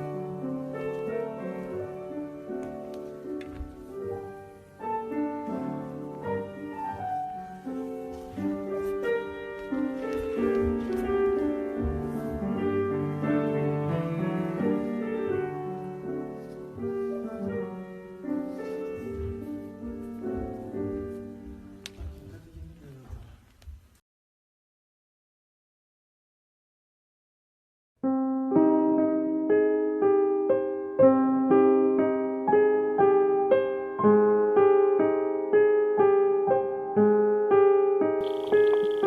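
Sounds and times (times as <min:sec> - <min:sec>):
classical piano music: 0:00.0 - 0:22.7, 0:28.0 - 0:39.0.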